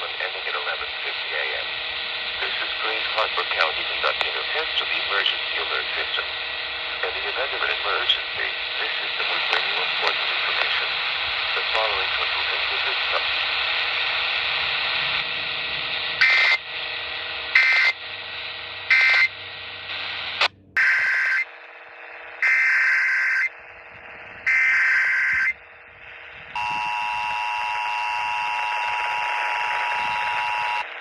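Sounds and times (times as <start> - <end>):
steady radio hiss: 0.0 - 31.0.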